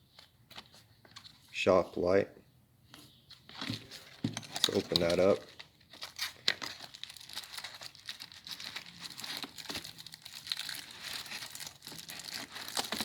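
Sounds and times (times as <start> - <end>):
packaging crinkling and rustling: 3.5 - 13.0.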